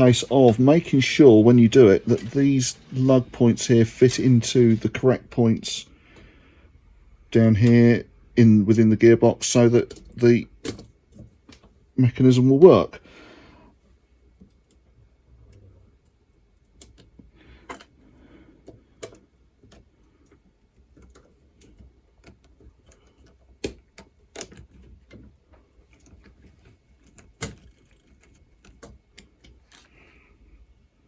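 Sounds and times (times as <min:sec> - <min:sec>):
metal lock parts clicking: 0:27.0 - 0:29.8.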